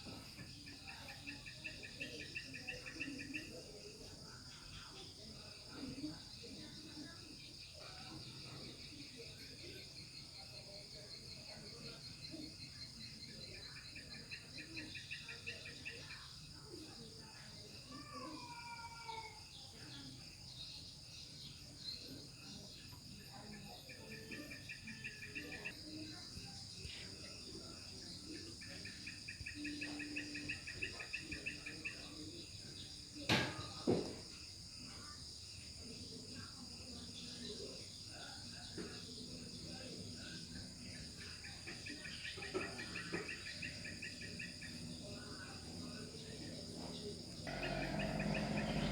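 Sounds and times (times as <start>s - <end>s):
crickets and insects trilling: 0.0s - 48.9s
pulsing insect trills: 39.8s - 48.9s.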